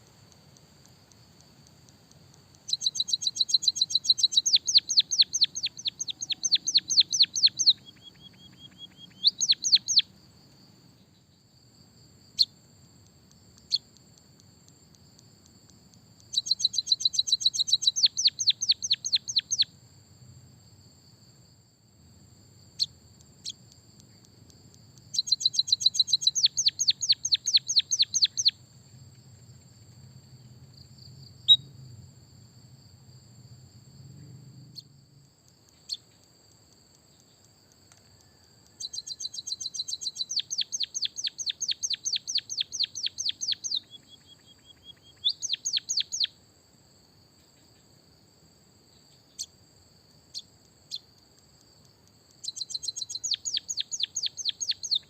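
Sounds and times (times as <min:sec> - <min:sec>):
faint high-pitched whine: 0:00.0 - 0:55.0
bird chips: 0:00.3 - 0:10.0
songbird trilling: 0:02.5 - 0:10.1, 0:13.6 - 0:14.0, 0:16.2 - 0:19.7, 0:25.0 - 0:28.6, 0:31.5 - 0:31.7, 0:35.7 - 0:36.1, 0:38.2 - 0:46.4, 0:52.4 - 0:55.0.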